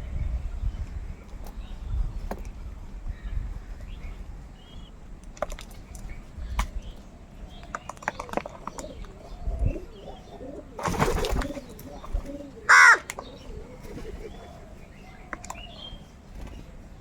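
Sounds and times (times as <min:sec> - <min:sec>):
beaks pecking at food: 0:05.2 - 0:09.2
faint bird calls: 0:07.5 - 0:16.8.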